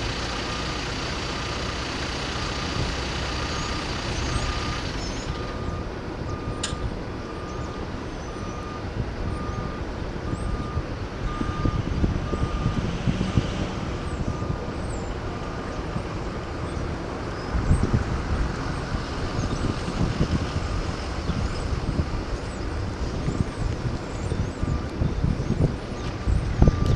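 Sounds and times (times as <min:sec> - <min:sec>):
diesel engine rumbling: 0:00.0 - 0:26.9
backup alarm beeping: 0:02.2 - 0:13.6, 0:26.3 - 0:26.9
sharp click: 0:06.6 - 0:06.9.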